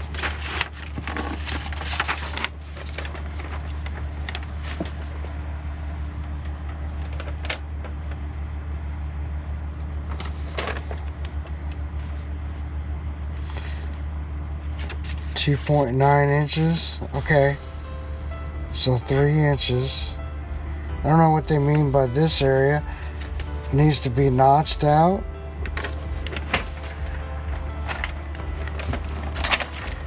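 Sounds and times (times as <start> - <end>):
low background hum: 0.0 - 30.0
faint constant tone: 17.2 - 30.0.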